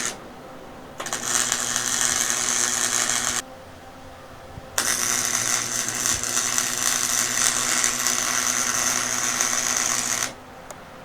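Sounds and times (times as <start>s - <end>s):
electric arc welding: 0.0s - 0.2s, 1.0s - 3.4s, 4.8s - 10.4s
low hum: 0.0s - 11.0s.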